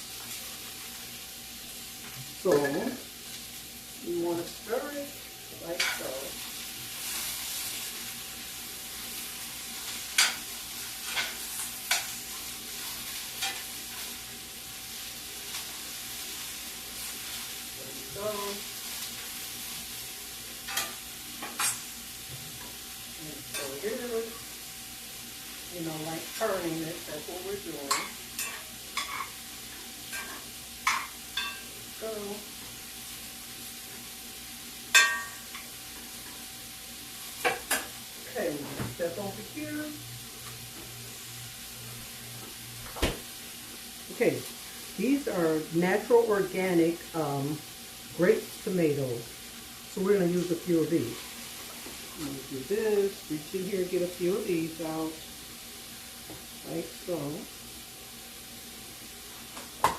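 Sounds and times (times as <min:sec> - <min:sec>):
vegetables sizzling in a pan: 0:00.0 - 0:59.9
spoon scraping and knocking pan: 0:10.1 - 0:12.2, 0:27.8 - 0:29.4, 0:30.1 - 0:31.7, 0:34.9 - 0:36.4.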